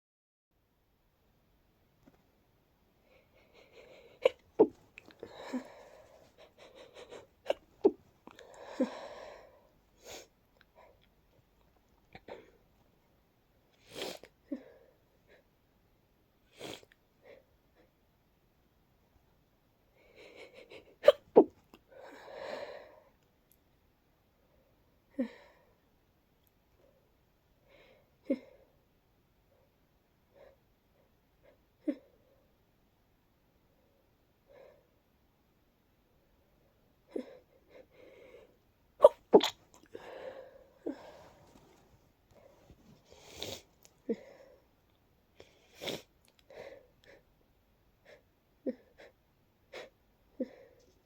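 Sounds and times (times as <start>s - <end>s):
breathy sounds: 3.0s - 9.7s, 38.2s - 41.8s
congested sneezes: 21.0s - 21.6s, 39.0s - 39.8s
breathy catches of breath: 39.4s - 41.5s.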